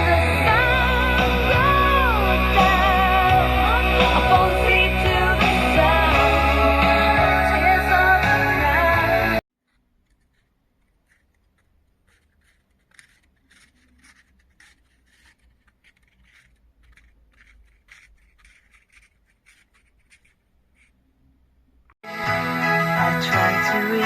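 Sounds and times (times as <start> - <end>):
faint scratching and scraping: 9.6 - 21.4.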